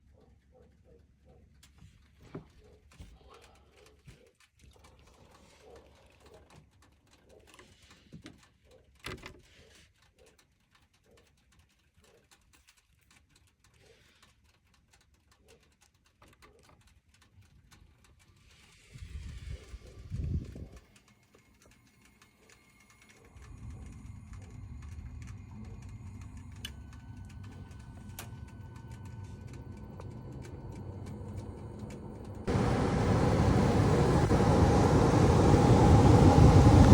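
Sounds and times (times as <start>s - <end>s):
furnace humming: 23.1s - 36.9s
loud rushing noise: 32.5s - 36.9s.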